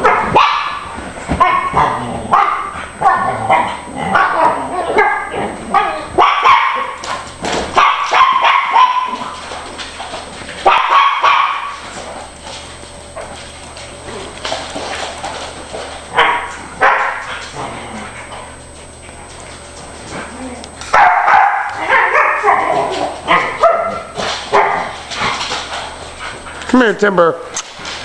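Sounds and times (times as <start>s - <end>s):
dogs barking: 0.0s - 9.5s, 10.6s - 12.0s, 16.1s - 18.7s, 20.9s - 26.5s.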